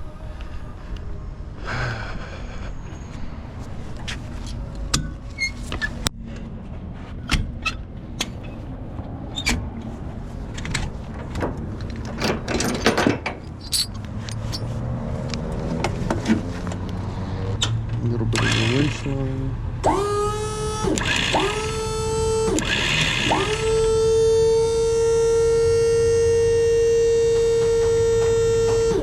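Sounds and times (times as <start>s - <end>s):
metal towing gear clanking: 10.4s - 15.0s
engine idling: 15.4s - 29.0s.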